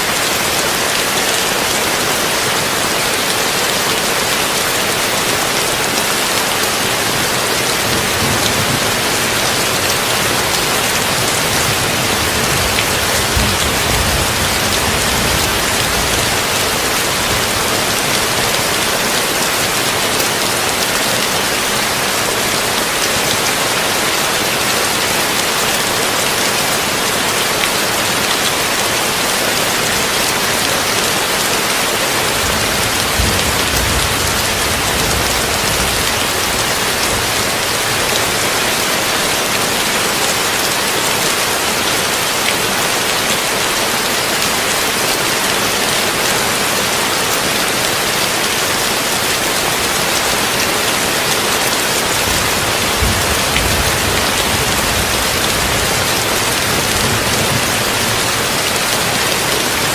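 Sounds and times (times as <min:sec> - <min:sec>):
heavy rain on a tin roof: 0:00.0 - 0:59.9
thunder rumbles: 0:07.8 - 0:18.4, 0:52.2 - 0:58.5.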